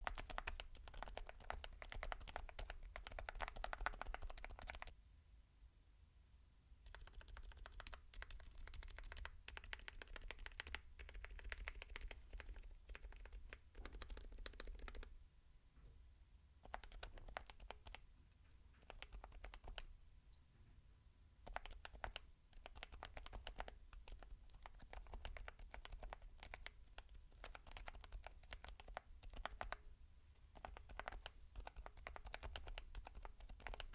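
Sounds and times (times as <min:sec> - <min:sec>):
typing on mechanical keyboard: 0:00.0 - 0:04.9, 0:06.9 - 0:15.2, 0:16.6 - 0:18.0, 0:18.8 - 0:19.9, 0:21.4 - 0:29.9, 0:30.6 - 0:33.9.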